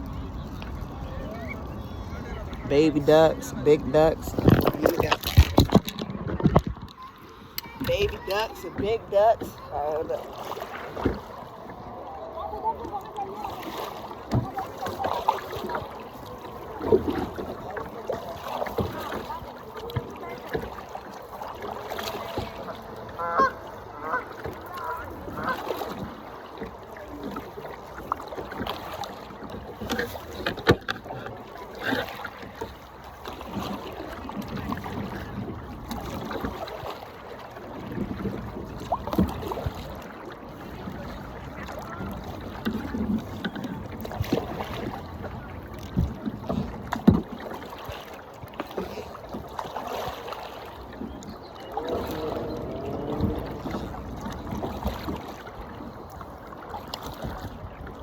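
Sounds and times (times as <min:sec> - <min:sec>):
water noise: 0:00.0 - 0:58.0
kayak knocking on water: 0:02.3 - 0:11.9, 0:12.6 - 0:58.0
waterfowl calling: 0:22.2 - 0:25.9, 0:51.0 - 0:54.6.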